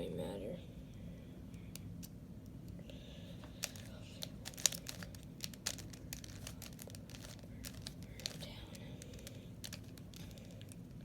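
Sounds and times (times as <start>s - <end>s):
puzzle cube plastic clicks: 3.6s - 8.4s, 9.0s - 10.8s.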